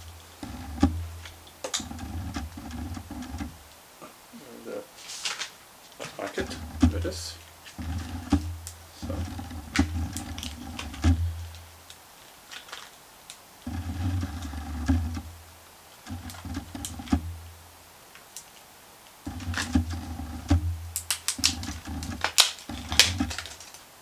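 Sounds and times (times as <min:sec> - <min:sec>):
clicks and taps on a laptop: 0:19.3 - 0:23.7.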